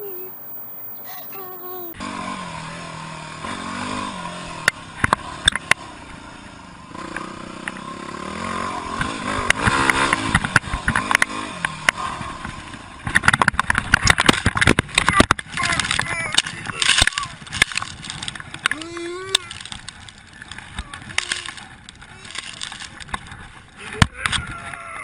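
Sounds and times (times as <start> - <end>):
engine revving: 6.9 - 12.5.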